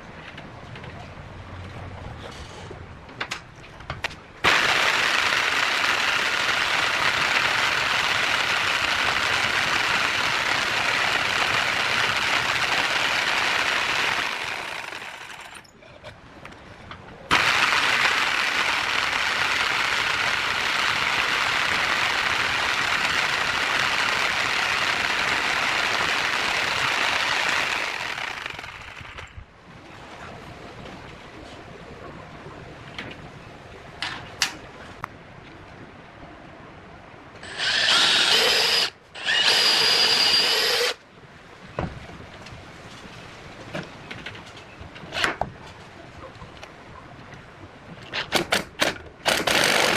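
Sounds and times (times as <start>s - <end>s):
electric hand drill running: 4.4s - 15.6s, 17.3s - 29.3s, 37.4s - 41.0s, 49.3s - 49.9s.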